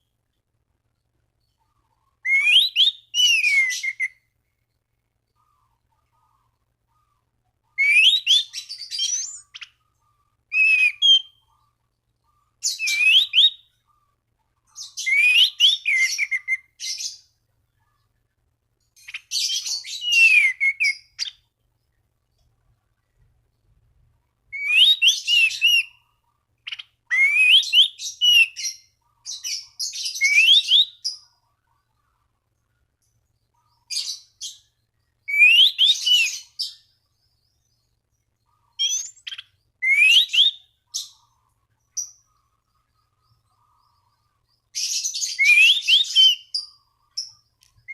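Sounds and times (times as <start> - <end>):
thrush singing whistled phrases: 2.2 - 4.3, 7.7 - 9.8, 10.5 - 11.5, 12.6 - 13.8, 14.8 - 17.3, 19.0 - 21.4, 24.5 - 26.0, 26.6 - 31.2, 33.8 - 36.9, 38.8 - 41.3, 44.7 - 47.3.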